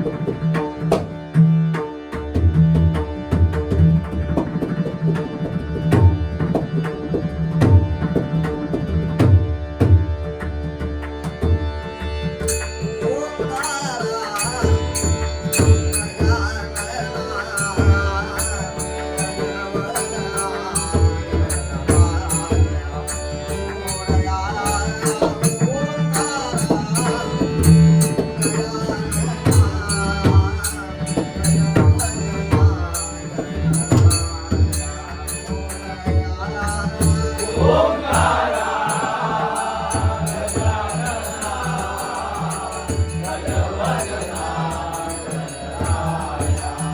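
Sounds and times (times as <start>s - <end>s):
hand drum: 0.0s - 11.7s, 12.4s - 20.1s, 20.8s - 41.7s
person singing: 34.2s - 46.9s
sustained drone: 36.7s - 46.9s.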